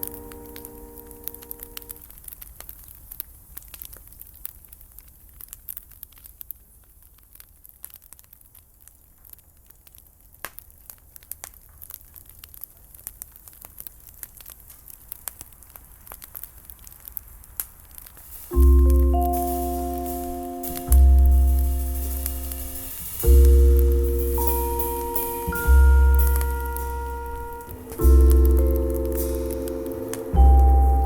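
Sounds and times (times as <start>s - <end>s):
low steady hum: 0.0s - 2.0s, 18.6s - 31.0s
campfire crackling and popping: 0.0s - 31.0s.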